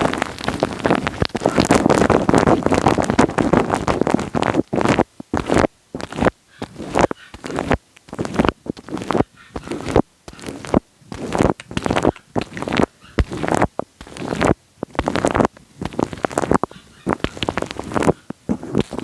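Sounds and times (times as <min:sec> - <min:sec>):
wet rustling on microphone: 0:00.0 - 0:19.0.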